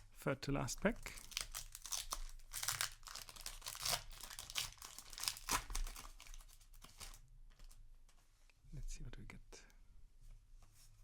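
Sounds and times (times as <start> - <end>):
foil wrapper tearing and crinkling: 1.1 - 7.8.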